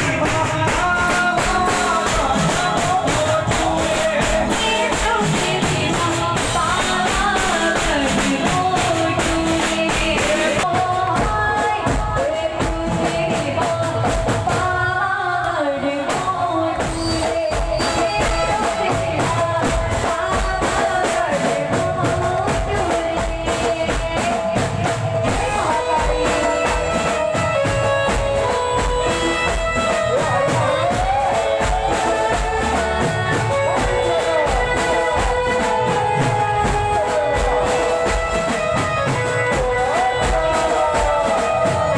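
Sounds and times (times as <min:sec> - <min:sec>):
fast drum beat: 0:00.0 - 0:15.1, 0:16.0 - 0:41.9
person singing: 0:00.0 - 0:41.9.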